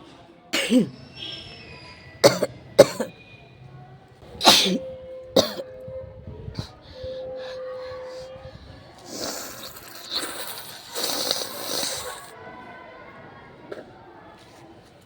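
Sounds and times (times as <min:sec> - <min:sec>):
person coughing: 0:00.6 - 0:01.0, 0:02.2 - 0:03.1, 0:04.4 - 0:04.8, 0:05.4 - 0:05.7.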